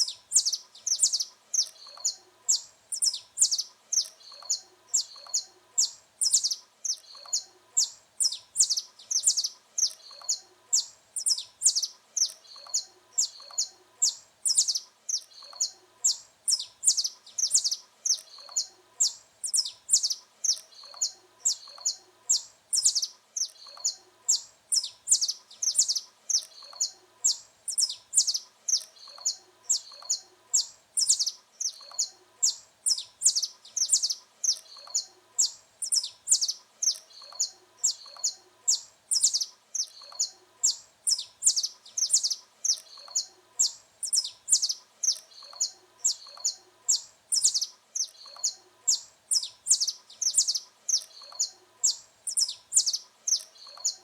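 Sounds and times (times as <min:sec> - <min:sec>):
finch chirping song: 0:00.0 - 0:54.0.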